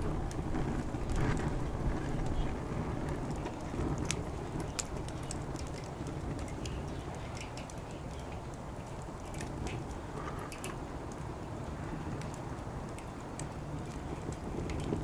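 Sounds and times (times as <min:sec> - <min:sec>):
low background rumble: 0:00.0 - 0:15.0
wood fire crackling and popping: 0:00.0 - 0:15.0.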